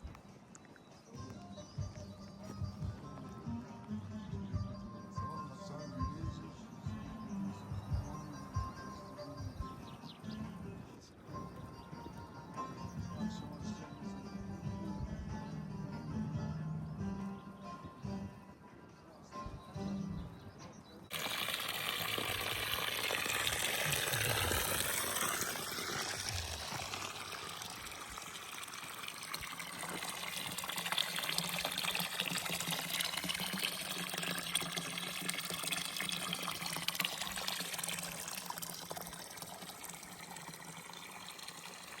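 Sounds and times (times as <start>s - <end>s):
running water rushing: 21.1s - 42.0s.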